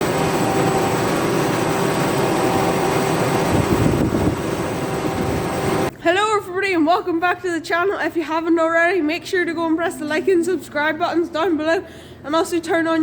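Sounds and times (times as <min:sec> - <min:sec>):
machine engine running: 0:00.0 - 0:05.9.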